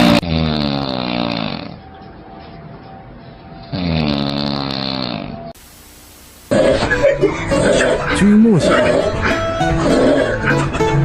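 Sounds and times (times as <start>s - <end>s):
person snoring loudly: 0.0s - 1.8s, 3.7s - 5.5s, 7.5s - 10.5s.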